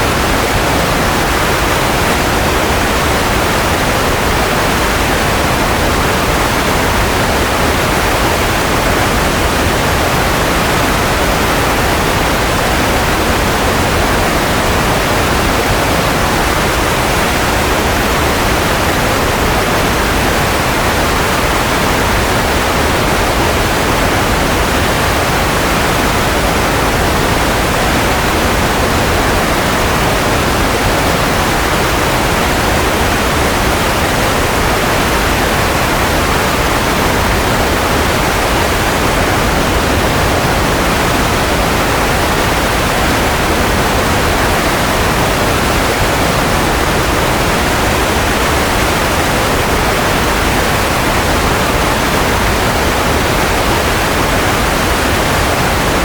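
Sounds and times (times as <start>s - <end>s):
steady white noise hiss: 0.0s - 56.0s.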